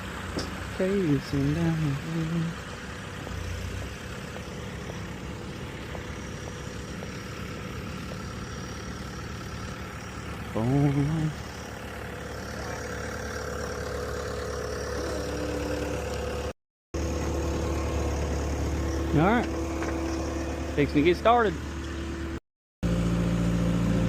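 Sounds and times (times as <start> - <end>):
vehicle engine idling: 0.0 - 24.0
brief voice-like sound: 14.9 - 16.1.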